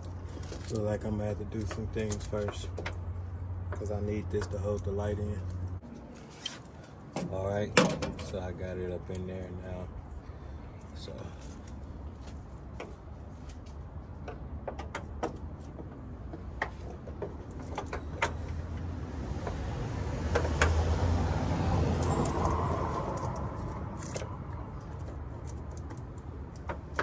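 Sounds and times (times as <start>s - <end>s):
parts clicking and rattling: 10.8s - 19.6s, 21.9s - 27.0s
vehicle passing by: 18.3s - 26.3s.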